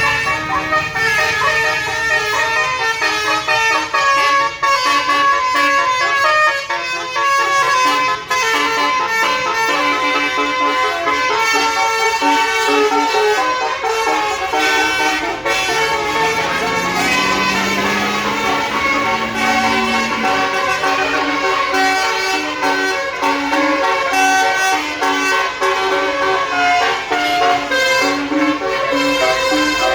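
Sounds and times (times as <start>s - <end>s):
multi-tone bus horn melody: 0.0s - 29.9s
low gliding tone: 15.6s - 21.6s.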